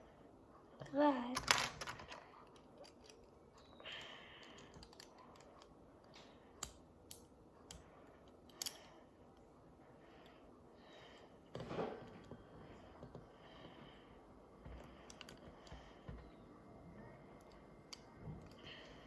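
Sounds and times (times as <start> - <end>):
plastic toy pieces clicking: 1.3 - 5.8, 8.4 - 8.9.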